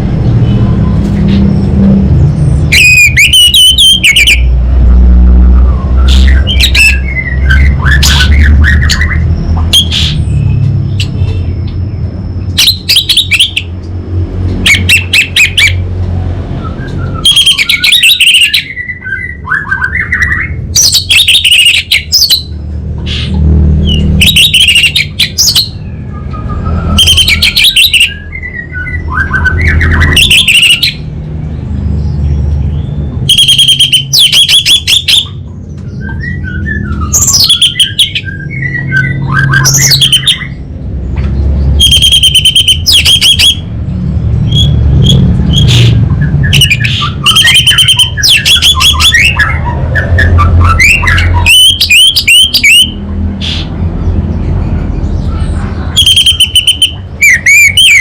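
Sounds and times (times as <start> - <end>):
thrush singing: 55.1 - 58.0.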